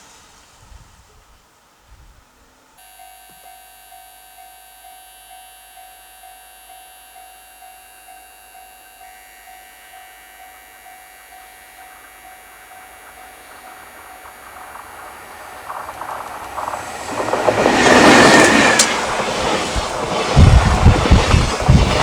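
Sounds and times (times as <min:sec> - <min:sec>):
level-crossing alarm ringing: 0:02.8 - 0:19.6.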